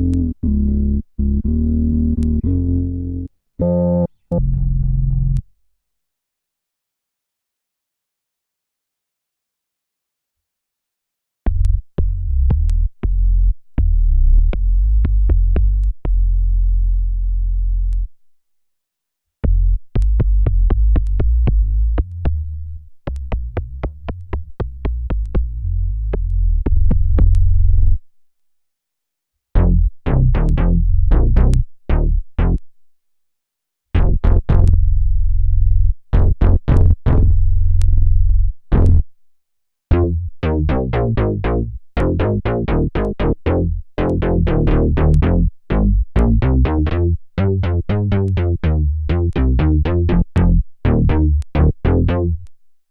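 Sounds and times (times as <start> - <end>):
synth bass riffs: 0.0 - 5.4, 29.6 - 32.6, 34.0 - 39.0, 39.9 - 52.5.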